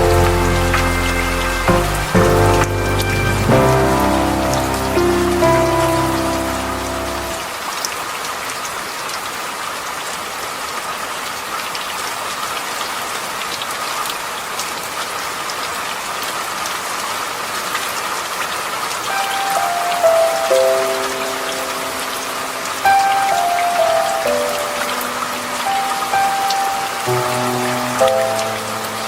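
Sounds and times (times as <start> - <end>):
soft sustained music notes: 0.0 - 7.5, 19.1 - 29.0
rain falling: 0.0 - 29.0.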